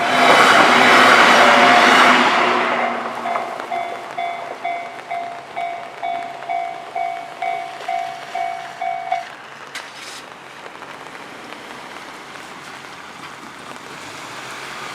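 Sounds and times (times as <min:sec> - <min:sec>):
level-crossing alarm bell ringing: 0:00.0 - 0:09.4
steady hiss: 0:00.0 - 0:14.9.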